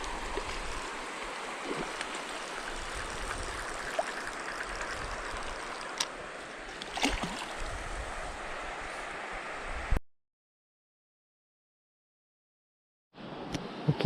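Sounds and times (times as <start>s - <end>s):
creek water over rocks: 0.0s - 9.7s.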